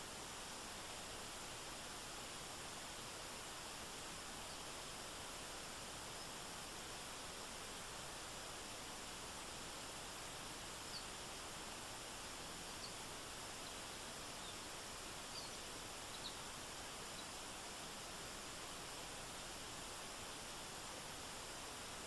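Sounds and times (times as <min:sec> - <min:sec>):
faint high chirps: 0:12.7 - 0:16.4.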